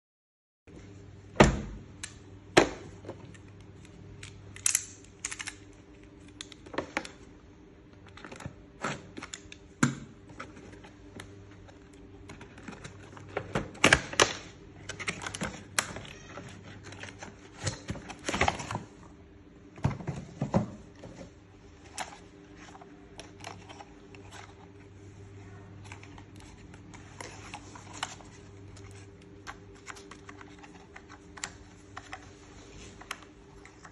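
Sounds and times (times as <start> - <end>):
steady low hum: 0.7 - 33.9
packaging rustling and clicking: 25.8 - 33.9.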